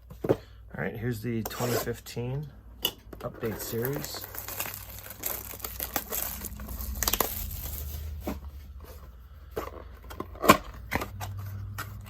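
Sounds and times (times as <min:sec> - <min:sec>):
cardboard tearing: 0:03.4 - 0:08.7
plastic wrap crinkling: 0:03.4 - 0:09.0.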